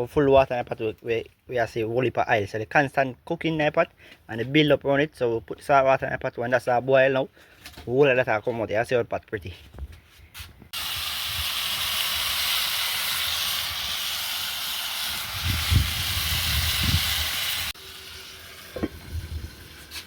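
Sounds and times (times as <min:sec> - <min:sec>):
boiling pot hissing and sizzling: 0:10.7 - 0:20.0.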